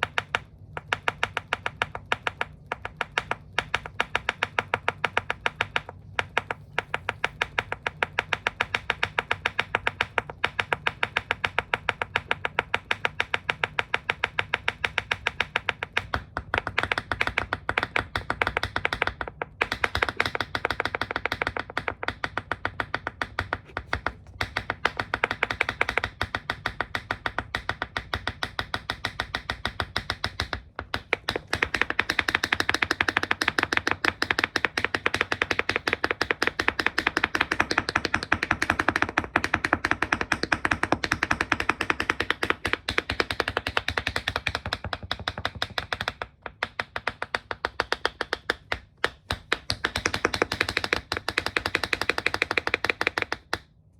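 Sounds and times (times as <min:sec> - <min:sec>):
tap shoes clicking on hard floor: 0:00.0 - 0:53.7.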